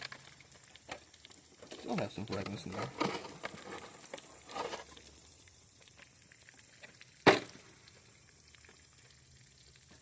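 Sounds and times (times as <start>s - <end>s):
handling and rustling noise: 1.6s - 5.0s.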